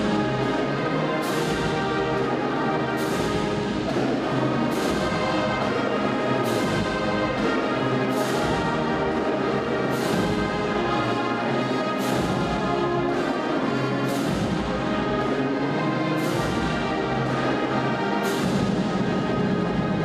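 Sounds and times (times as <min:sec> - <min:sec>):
brass band playing slow piece: 0:00.0 - 0:20.0.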